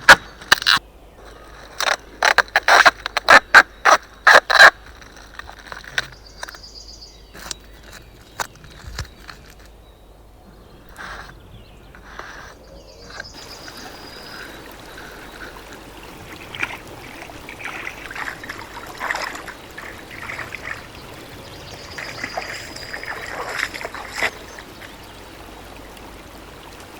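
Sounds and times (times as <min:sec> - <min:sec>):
water trickling and splashing: 0:10.6 - 0:26.9.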